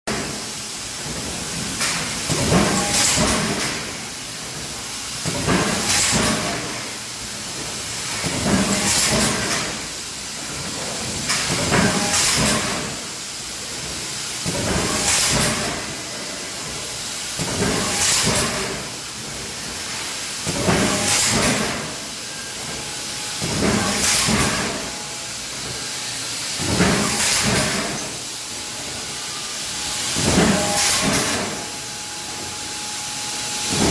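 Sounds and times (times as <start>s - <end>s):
forging press running: 17.4s - 33.9s.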